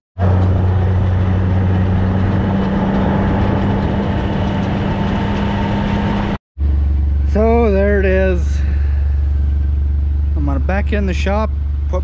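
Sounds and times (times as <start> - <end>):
rattly noise: 0.2 - 7.4
engine running steadily: 0.2 - 12.0.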